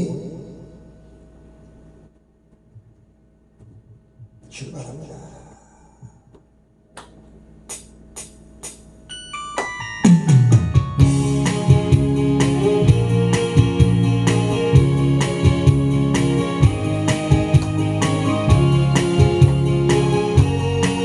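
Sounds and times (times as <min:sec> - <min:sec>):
trot song accompaniment: 0:07.7 - 0:21.0
descending keyboard notes: 0:09.1 - 0:21.0.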